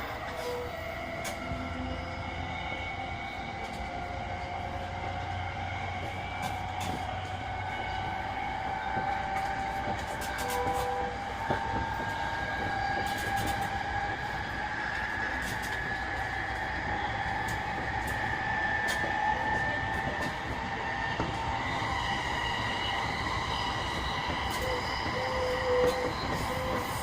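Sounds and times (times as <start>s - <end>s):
electric train motor whine: 0.0s - 27.0s
wheels rumbling on rails: 0.0s - 27.0s.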